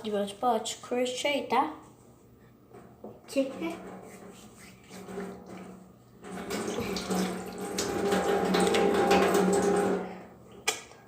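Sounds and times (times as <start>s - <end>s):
water running: 3.3s - 10.2s.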